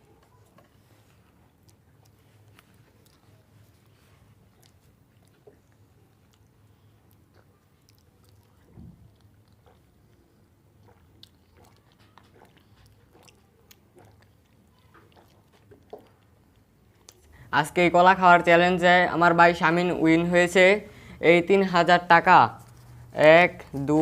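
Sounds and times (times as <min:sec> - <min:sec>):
people chewing: 0:00.0 - 0:17.5, 0:22.6 - 0:24.0.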